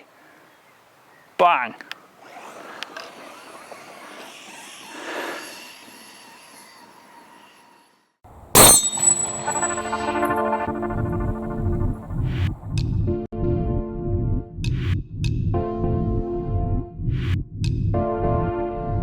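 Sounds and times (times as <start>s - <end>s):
faint outdoor field noise: 0.0s - 12.7s
sharp crash: 8.6s - 12.6s.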